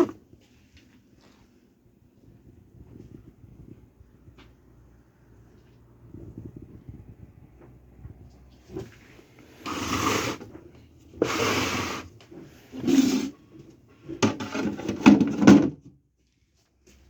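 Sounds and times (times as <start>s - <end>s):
rubbing and scraping handling noise: 0.0s - 1.5s, 8.4s - 17.0s.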